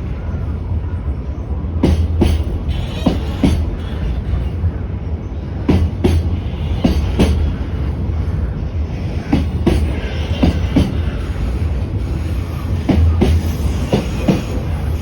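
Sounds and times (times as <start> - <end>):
freight train rumbling past: 0.0 - 15.0
wheels clacking over rail joints: 1.7 - 4.7.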